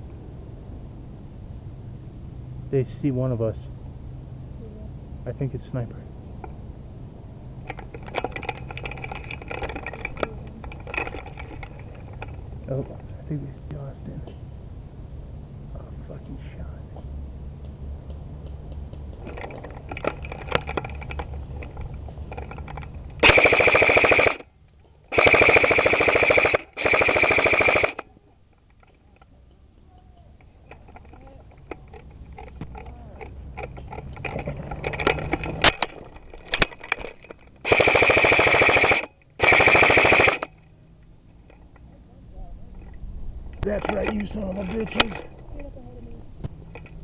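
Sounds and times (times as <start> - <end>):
airsoft gun firing full auto: 23.2 - 24.5, 25.1 - 28.1, 35.6 - 36.8, 37.6 - 40.6.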